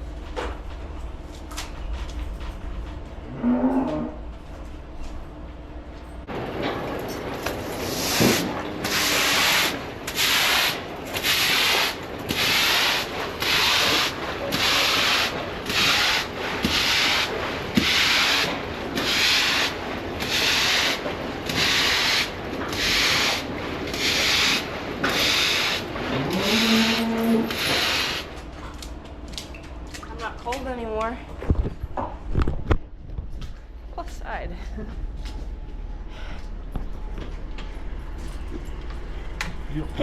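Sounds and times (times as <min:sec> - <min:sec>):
broom sweeping water: 0:07.6 - 0:28.3.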